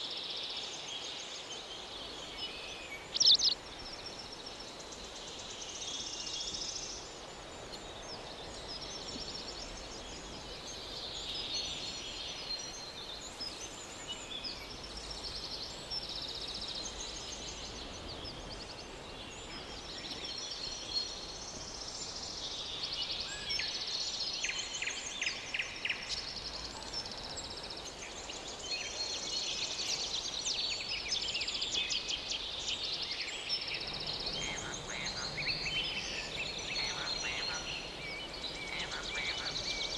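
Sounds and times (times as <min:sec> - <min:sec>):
low steady hiss: 0:00.0 - 0:39.9
high chirping animal calls: 0:34.3 - 0:39.9.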